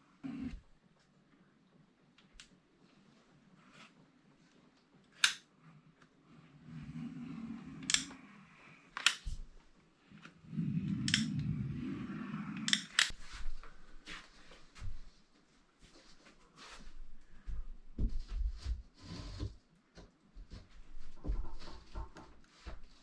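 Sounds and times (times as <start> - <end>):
sharp clicks on metal parts: 5.2 - 5.5, 7.8 - 8.2, 9.0 - 9.3, 12.6 - 13.1
low rubbing or scraping: 10.4 - 12.7.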